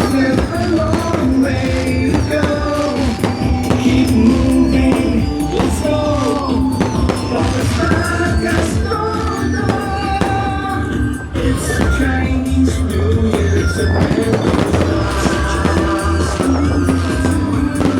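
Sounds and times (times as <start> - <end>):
pop song with sung melody: 0.0 - 17.9.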